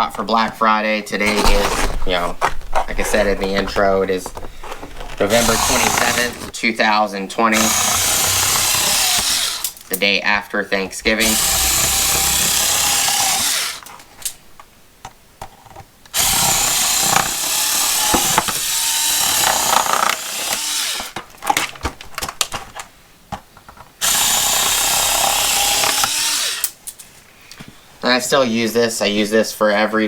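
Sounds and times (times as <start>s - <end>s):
power cutting tool buzzing: 4.7s - 6.6s, 7.5s - 9.8s, 11.0s - 13.9s, 16.2s - 21.2s, 24.0s - 26.7s.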